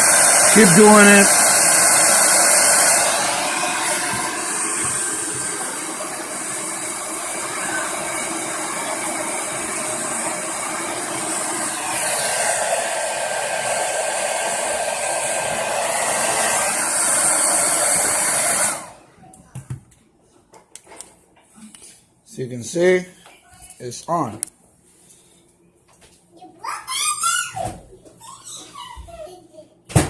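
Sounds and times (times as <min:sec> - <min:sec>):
hair dryer blowing: 0:00.0 - 0:19.1.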